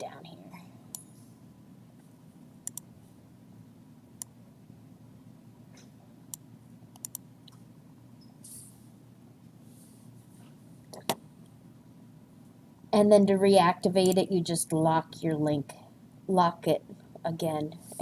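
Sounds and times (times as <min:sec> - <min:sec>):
faint low hum: 0:00.0 - 0:18.0
computer mouse clicking: 0:02.6 - 0:02.9, 0:06.3 - 0:07.6.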